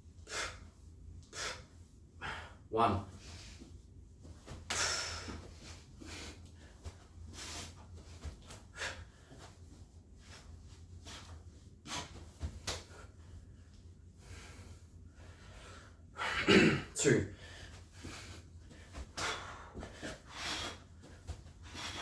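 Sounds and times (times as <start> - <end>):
man breathing hard: 0.2 - 0.7, 1.3 - 3.7, 4.7 - 7.8, 8.6 - 9.6, 14.1 - 16.5, 17.3 - 22.0.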